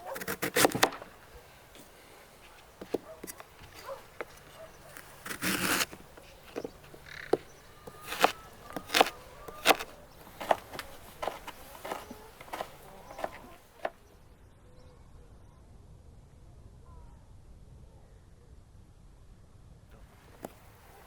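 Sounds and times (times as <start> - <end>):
rustling scrape: 0.0 - 14.0.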